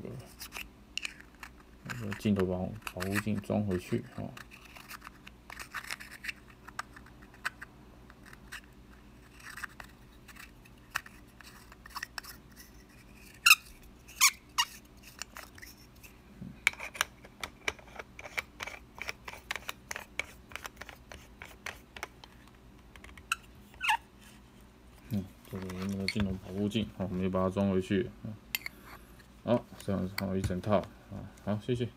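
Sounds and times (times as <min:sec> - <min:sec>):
metal lens parts clicking: 0:00.4 - 0:08.7, 0:28.5 - 0:29.0.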